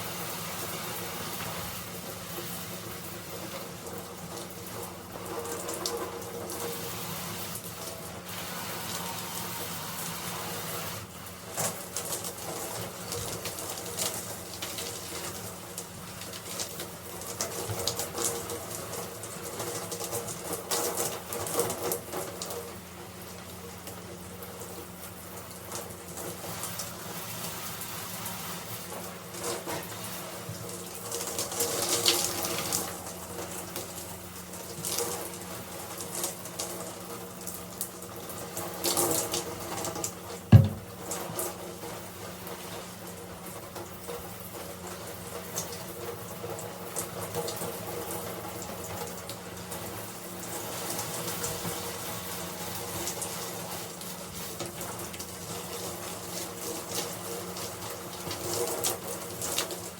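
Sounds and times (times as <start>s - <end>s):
shower water splashing: 0.0s - 59.9s
sharp knock: 40.5s - 41.0s.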